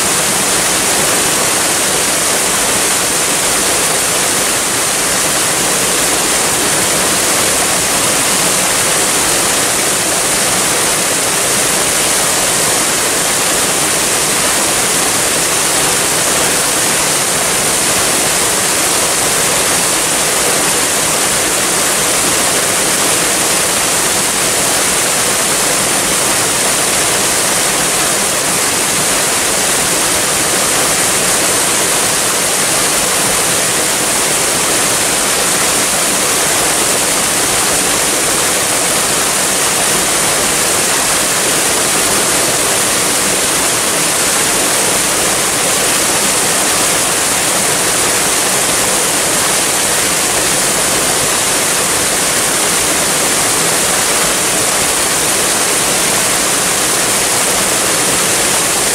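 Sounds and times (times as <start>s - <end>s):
waterfall rushing: 0.0s - 58.9s.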